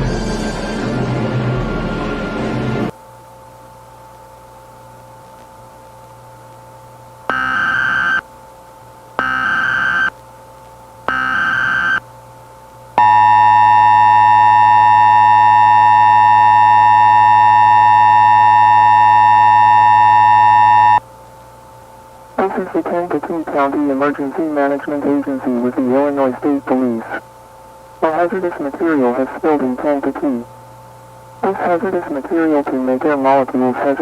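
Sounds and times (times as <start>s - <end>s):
short data bursts: 7.3s - 8.2s, 9.2s - 10.1s, 11.1s - 12.0s, 13.0s - 21.0s
harsh two-tone attention signal: 11.1s - 12.0s, 13.0s - 21.0s.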